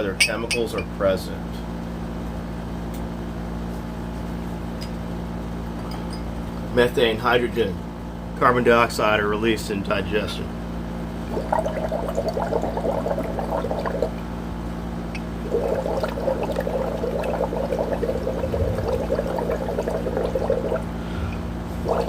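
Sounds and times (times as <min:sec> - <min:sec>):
steady low hum: 0:00.0 - 0:22.0
bubbling through a straw in water: 0:11.2 - 0:14.3, 0:15.1 - 0:22.0.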